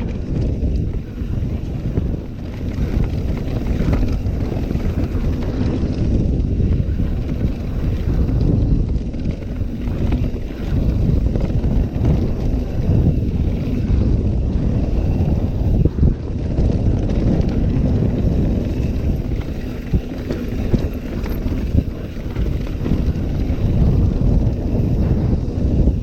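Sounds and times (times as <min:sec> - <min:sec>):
bike knocks and rattles: 0:00.0 - 0:26.0
tyres rolling on dirt: 0:00.0 - 0:26.0
wind buffeting microphone: 0:00.0 - 0:26.0.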